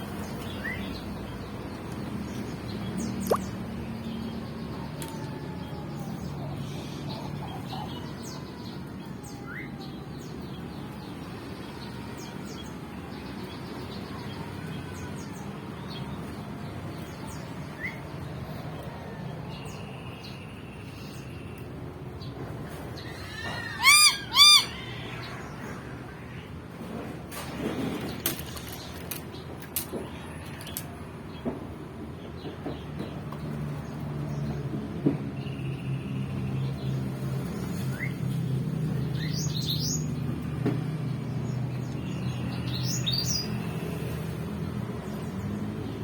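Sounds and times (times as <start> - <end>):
songbirds chirping faintly: 0.0 - 46.0
loud short bird calls: 23.1 - 25.4.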